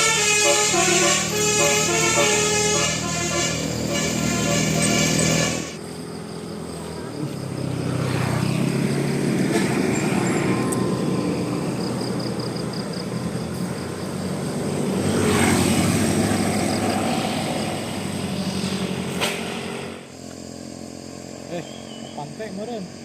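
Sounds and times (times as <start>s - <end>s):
bus diesel engine passing: 0.0s - 23.0s.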